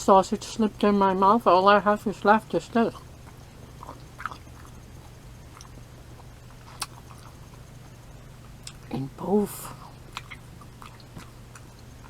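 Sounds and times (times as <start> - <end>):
steady low hum: 0.0 - 12.0
faint mouth clicks chewing: 2.9 - 8.9, 9.8 - 12.0.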